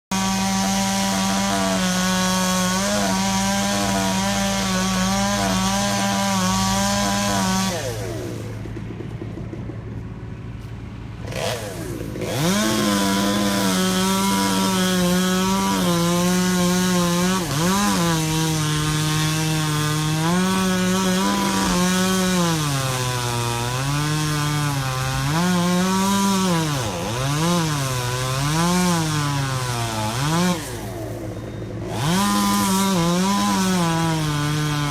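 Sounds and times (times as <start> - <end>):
chainsaw revving and cutting: 0.1 - 9.0, 11.2 - 34.9.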